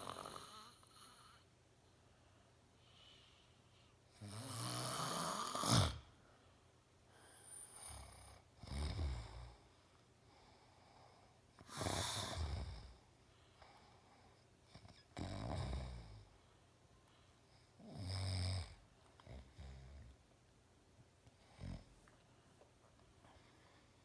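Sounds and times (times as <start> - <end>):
man snoring loudly: 0.0 - 1.0, 4.2 - 6.0.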